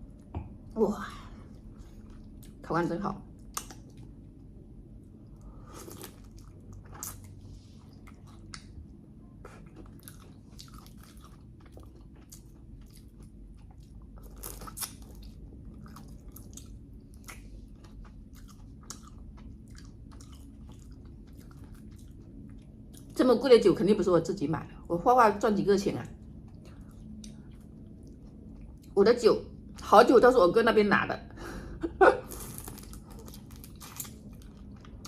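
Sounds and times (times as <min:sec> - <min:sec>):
person chewing crunchy food: 0:05.5 - 0:23.2, 0:32.3 - 0:35.0.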